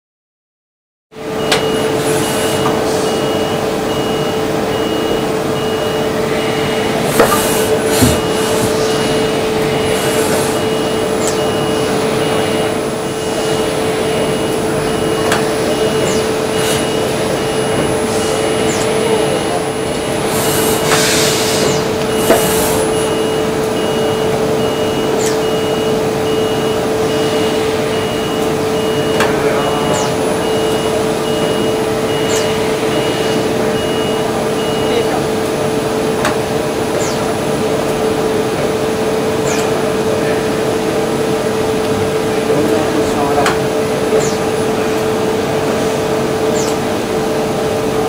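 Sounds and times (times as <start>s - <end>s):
grinder machine humming: 1.2s - 48.0s
high electronic beep: 1.4s - 20.9s, 21.6s - 35.2s.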